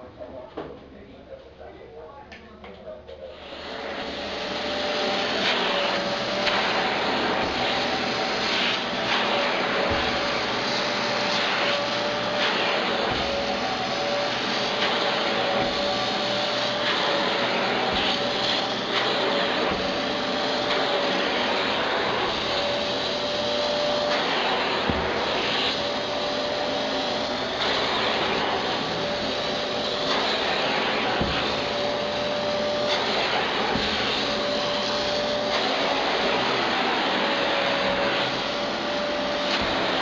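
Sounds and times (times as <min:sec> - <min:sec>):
vacuum cleaner running: 0:03.2 - 0:40.0.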